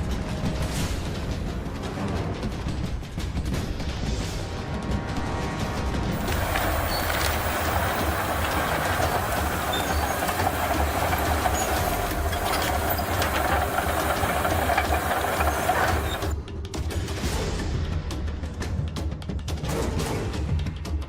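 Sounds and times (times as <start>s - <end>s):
diesel engine running under load: 6.1s - 16.4s
hissing grinding noise: 6.1s - 16.4s
scattered crackles: 6.2s - 16.4s.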